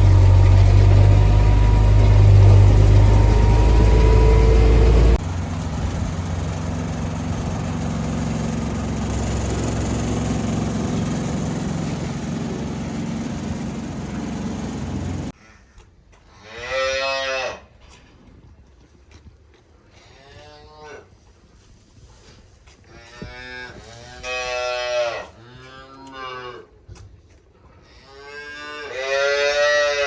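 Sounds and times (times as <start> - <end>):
heavy engine running: 0.0 - 15.3
machinery humming: 0.0 - 15.3
cow mooing: 28.1 - 30.0.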